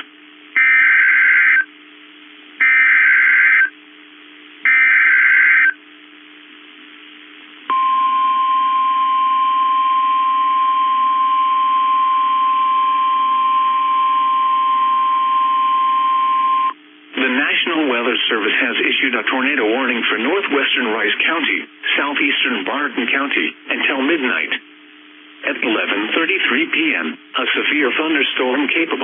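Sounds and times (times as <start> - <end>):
steady alarm tone: 0.6 - 1.7, 2.6 - 3.7, 4.6 - 5.8, 7.7 - 16.8.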